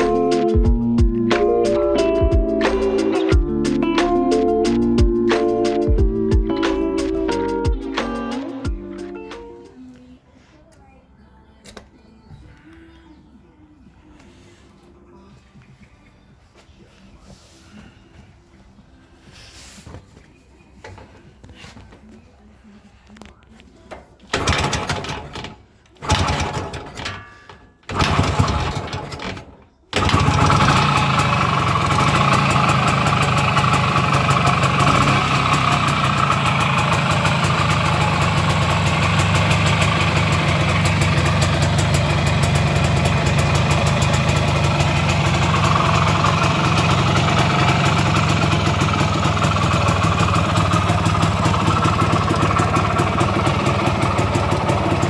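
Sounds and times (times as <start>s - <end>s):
two-stroke engine starting: 24.2s - 55.0s.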